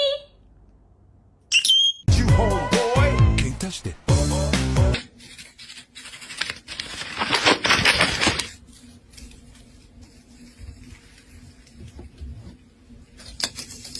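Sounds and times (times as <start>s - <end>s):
scratchy rustling: 5.2s - 13.9s.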